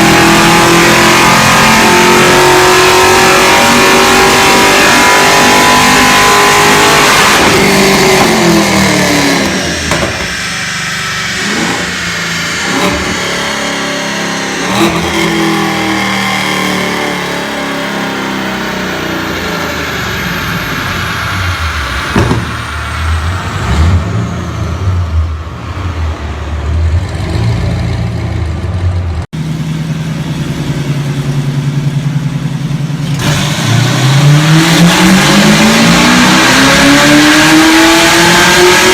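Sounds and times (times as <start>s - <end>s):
car engine revving: 0.0s - 38.9s.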